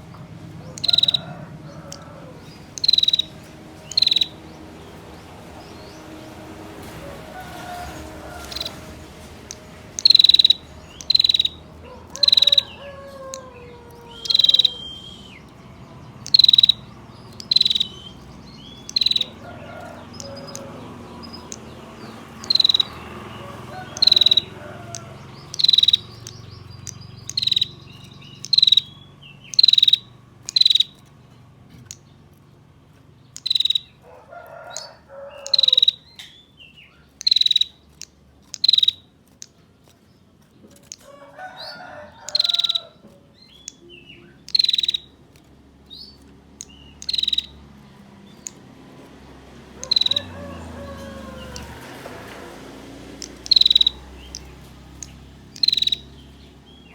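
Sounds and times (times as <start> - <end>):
faint bird or insect calls: 0.6 - 31.1, 33.3 - 36.3, 36.9 - 37.8, 38.5 - 39.1, 41.1 - 42.9, 43.6 - 45.1, 46.6 - 47.6, 49.8 - 52.5, 53.2 - 56.9
bird giving harsh sharp calls: 0.7 - 1.4, 2.7 - 4.4, 10.0 - 15.4, 16.2 - 19.4, 22.4 - 23.0, 23.8 - 26.4, 27.2 - 27.8, 28.4 - 31.0, 33.4 - 34.0, 34.8 - 36.2, 37.2 - 37.8, 38.5 - 39.1, 44.5 - 45.1, 49.8 - 50.4, 53.4 - 56.2.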